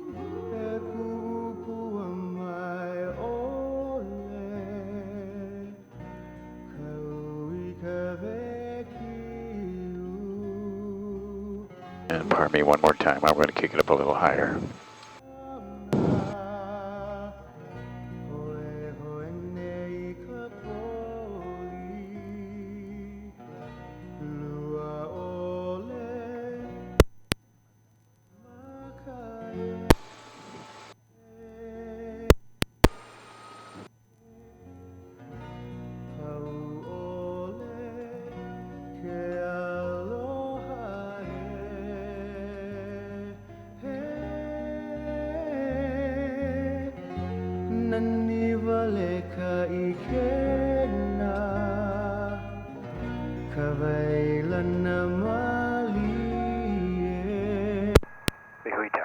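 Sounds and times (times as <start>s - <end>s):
sharp clicks: 12.1s - 15.2s, 16.0s - 16.4s, 27.0s - 27.4s, 29.9s - 31.0s, 32.3s - 33.9s, 58.0s - 59.0s.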